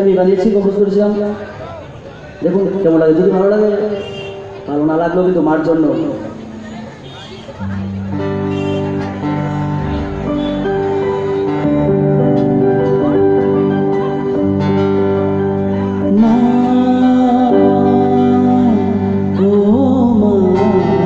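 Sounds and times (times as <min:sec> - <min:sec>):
guitar accompaniment: 0:02.4 - 0:21.0
person singing long notes: 0:15.6 - 0:21.0.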